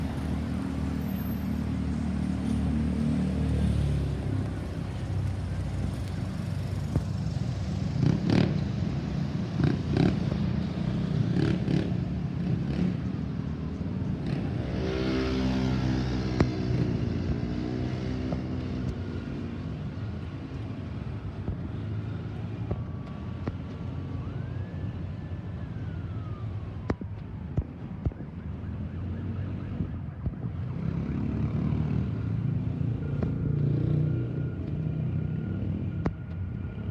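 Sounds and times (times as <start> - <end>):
road traffic passing: 0.0 - 36.9
faint siren wail: 14.6 - 36.9.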